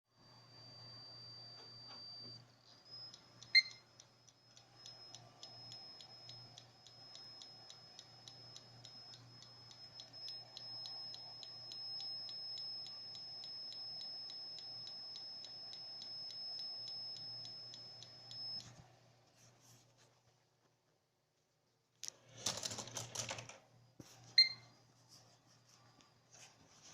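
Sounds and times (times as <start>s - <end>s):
hard drive whistle: 0.2s - 18.7s
hard drive ticking: 2.2s - 18.7s.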